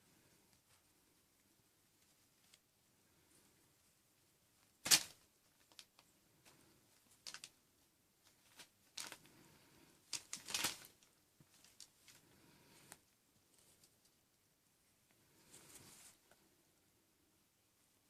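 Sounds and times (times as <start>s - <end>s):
kittens scuffling: 8.2s - 14.2s.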